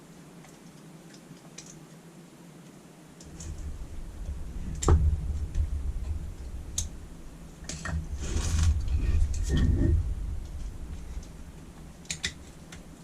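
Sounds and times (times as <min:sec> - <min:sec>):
low rumble of handling: 0:03.2 - 0:13.0
scraping rustle: 0:03.2 - 0:13.0.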